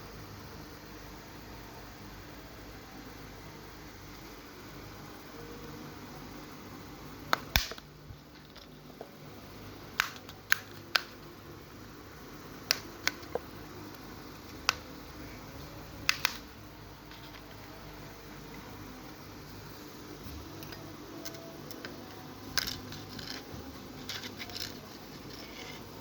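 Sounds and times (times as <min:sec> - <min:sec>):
plastic parts clicking: 0:16.1 - 0:16.4, 0:20.6 - 0:25.8.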